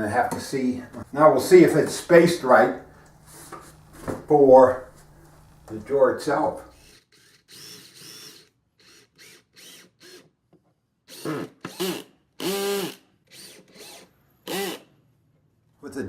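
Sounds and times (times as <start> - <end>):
cordless drill driving screws: 6.7 - 10.3, 11.1 - 14.9.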